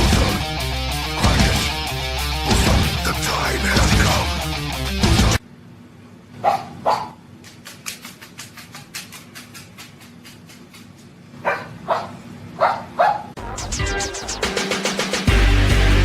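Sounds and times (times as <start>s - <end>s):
dog barking: 6.4s - 7.2s, 11.4s - 13.4s.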